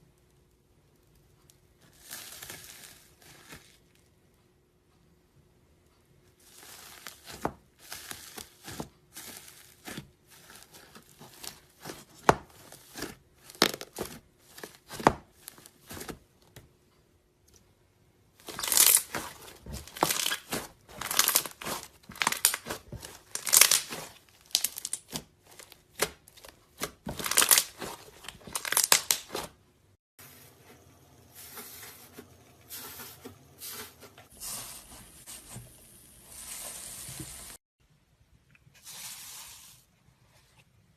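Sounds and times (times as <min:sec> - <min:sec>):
crunchy slime crackling: 0:06.4 - 0:16.2, 0:18.4 - 0:29.6.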